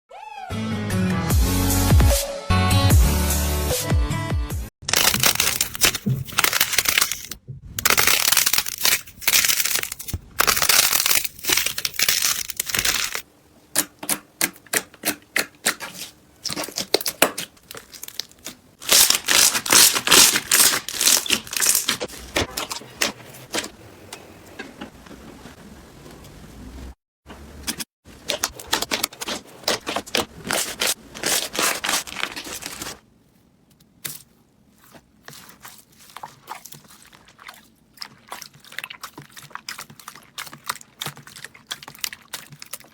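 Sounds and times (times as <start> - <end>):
slime crackling and popping: 4.9 - 7.2, 7.8 - 22.8.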